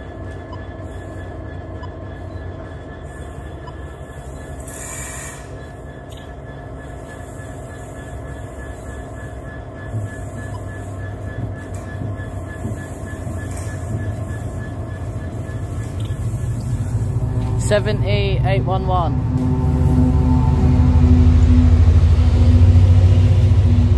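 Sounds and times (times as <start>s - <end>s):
freight train rumbling: 0.0s - 23.9s
wheel squeal: 4.6s - 5.9s.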